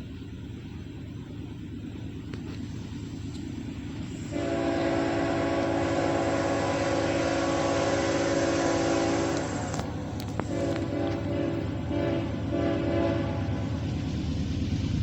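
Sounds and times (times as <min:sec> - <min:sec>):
low rumble of train: 0:00.0 - 0:15.0
locomotive air horn: 0:04.2 - 0:13.6.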